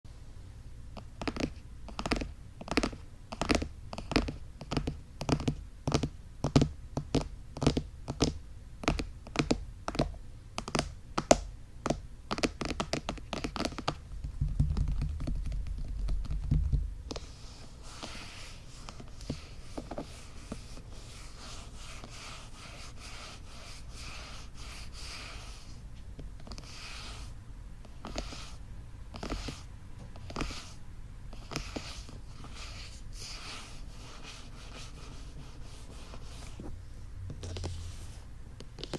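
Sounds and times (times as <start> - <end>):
fingertips tapping microphone: 0.9 - 36.7
rubbing microphone ears: 12.6 - 25.8, 26.5 - 36.8.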